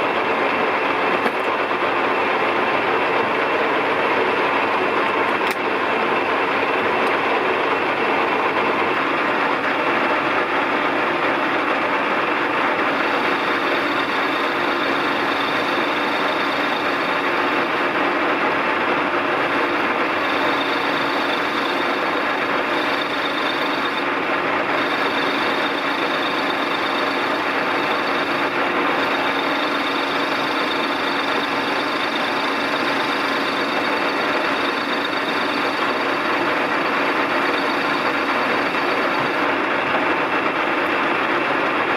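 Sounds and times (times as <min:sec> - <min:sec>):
lathe mechanical hum: 0:00.0 - 0:41.9
thin high whine: 0:12.9 - 0:18.0, 0:19.5 - 0:39.5.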